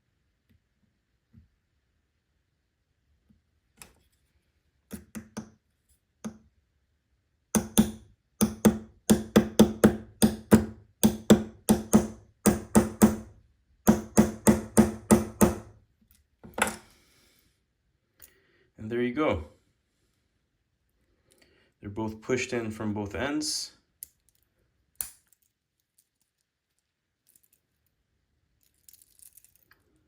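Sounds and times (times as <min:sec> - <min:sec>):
small hammer tapping metal tool: 0:04.9 - 0:05.6, 0:07.6 - 0:13.2.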